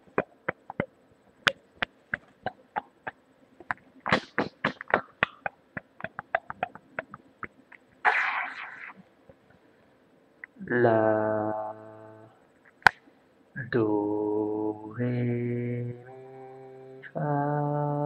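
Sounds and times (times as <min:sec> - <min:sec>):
beatboxing clicks and pops: 0:00.0 - 0:09.4, 0:12.6 - 0:13.0.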